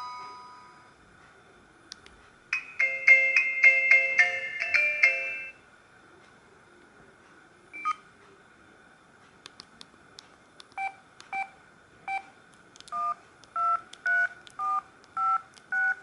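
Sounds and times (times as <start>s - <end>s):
phone ringtone melody: 2.6s - 5.6s.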